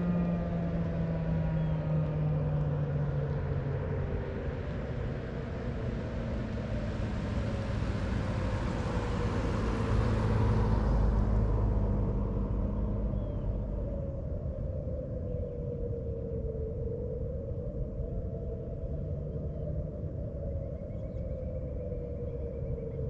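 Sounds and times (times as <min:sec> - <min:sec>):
passing road vehicle: 0:05.6 - 0:14.0.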